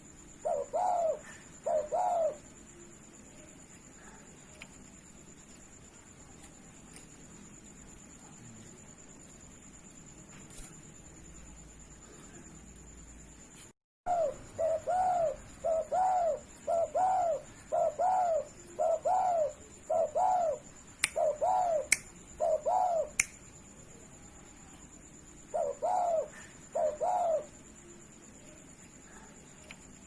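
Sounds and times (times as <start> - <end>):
dove cooing: 0.4 - 2.6, 14.1 - 23.2, 25.5 - 27.6
sharp clicks: 21.0 - 21.2, 23.2 - 23.4.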